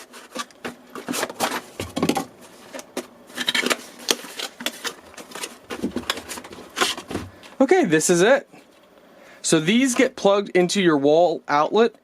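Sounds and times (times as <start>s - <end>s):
packaging rustling and scraping: 0.0s - 7.6s.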